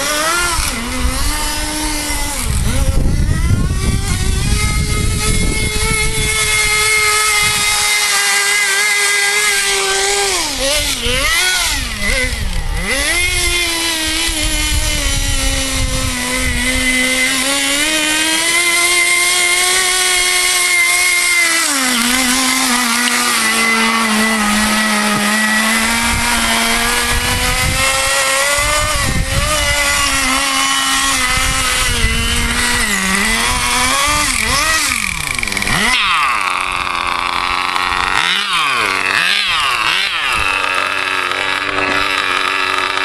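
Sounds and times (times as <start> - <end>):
small glow engine running: 0.0 - 43.0.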